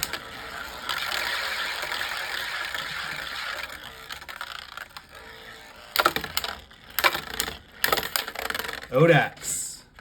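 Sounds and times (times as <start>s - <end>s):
spinning tops scraping: 0.0s - 9.7s
plastic knocks and clatters: 5.9s - 8.9s.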